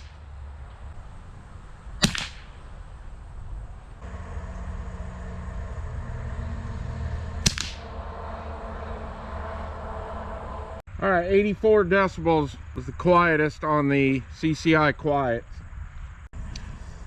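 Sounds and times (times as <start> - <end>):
rifle shots cracking: 2.0 - 2.8, 7.4 - 7.8.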